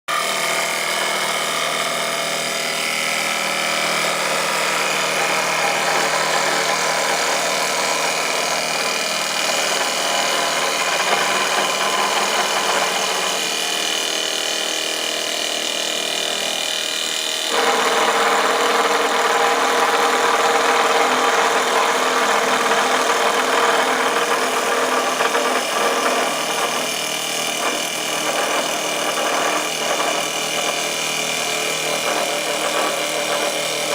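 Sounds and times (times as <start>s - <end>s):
cutter working turning wood: 0.1s - 33.9s
lathe motors humming: 16.4s - 33.9s.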